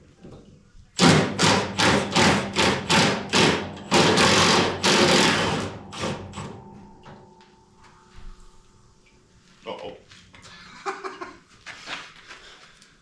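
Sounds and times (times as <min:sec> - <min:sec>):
pneumatic impact wrench bursts: 0:01.0 - 0:06.6
quiet steady hum: 0:05.8 - 0:13.0.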